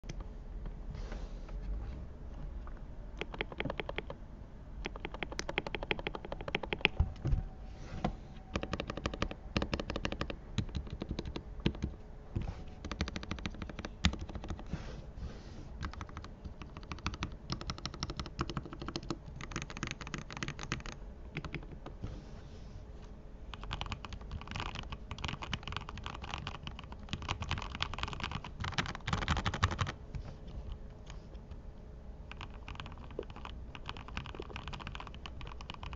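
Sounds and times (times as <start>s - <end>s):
mechanical keyboard typing: 3.2s - 4.2s, 4.8s - 7.0s, 8.6s - 12.0s, 12.8s - 14.7s, 15.8s - 22.0s, 23.5s - 30.0s, 32.3s - 35.9s.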